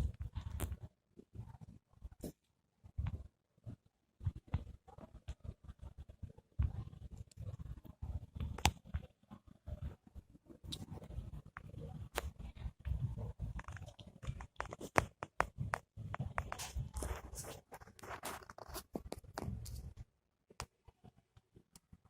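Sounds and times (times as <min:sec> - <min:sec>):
kitten claws scrabbling on hard surface: 0:13.0 - 0:19.9.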